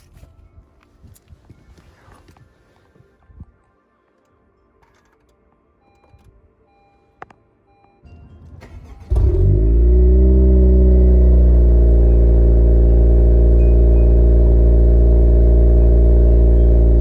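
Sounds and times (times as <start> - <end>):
car engine starting and idling: 8.2 - 17.0.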